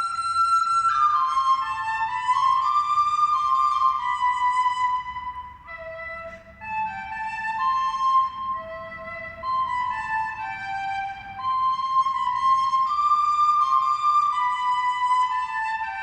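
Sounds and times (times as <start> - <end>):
slow flute melody: 0.0 - 16.0.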